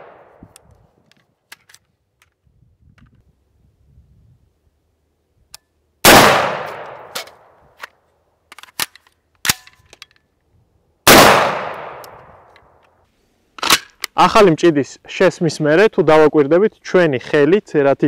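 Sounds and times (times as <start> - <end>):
rifle shot with echo: 0.0 - 0.4, 6.0 - 7.5, 11.1 - 12.5.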